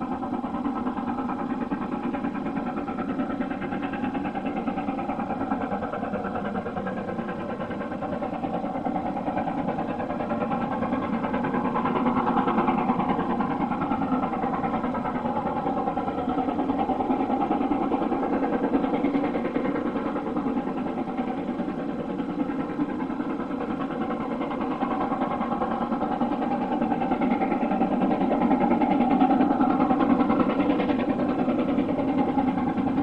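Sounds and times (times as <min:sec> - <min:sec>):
train running: 0:00.0 - 0:33.0.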